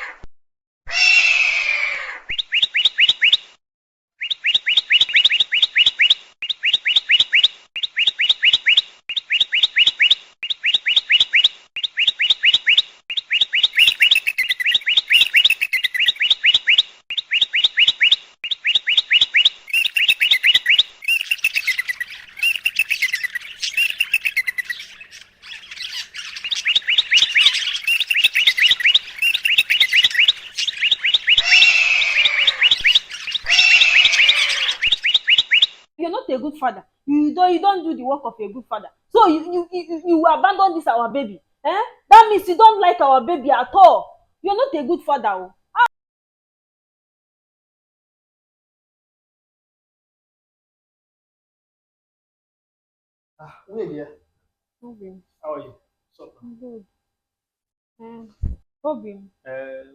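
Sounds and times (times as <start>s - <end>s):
bird chirping: 2.3s - 3.4s, 4.2s - 35.8s.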